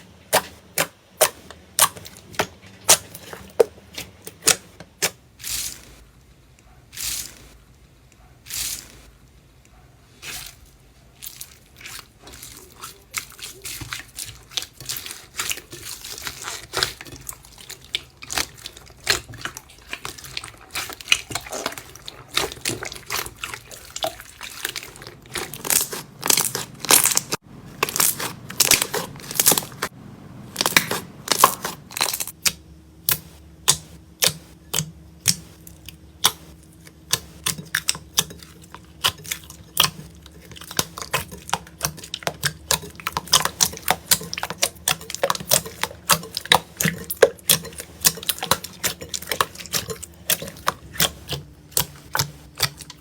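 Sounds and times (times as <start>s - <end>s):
slime squeezed crackling and popping: 12.5s - 29.9s, 30.6s - 53.0s.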